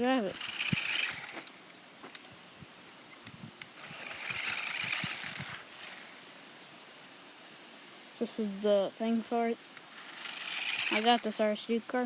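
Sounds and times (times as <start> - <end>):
rc car motor and tyre hiss: 0.0 - 1.6, 3.1 - 6.2, 9.8 - 11.6
scattered clicks: 0.0 - 2.3.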